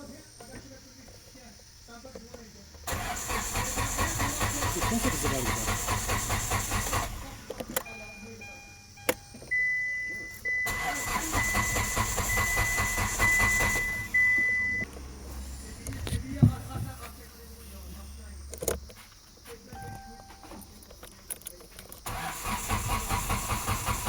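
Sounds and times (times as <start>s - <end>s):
starter motor cranking engine: 2.9s - 7.7s, 10.6s - 14.2s, 22.0s - 24.0s
high electronic beeps: 7.8s - 14.9s, 19.7s - 20.9s.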